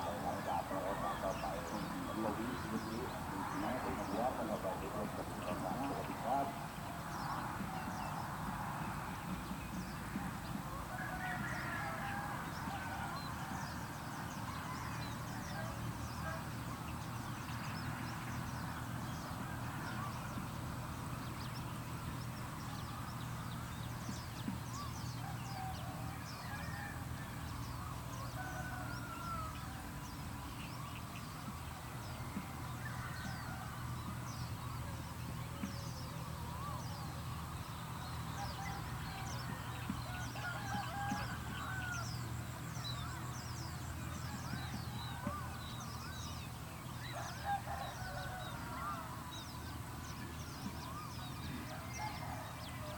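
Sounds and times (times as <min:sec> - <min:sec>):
domestic fowl calling: 0:00.0 - 0:06.6
steady low hum: 0:00.0 - 0:11.0.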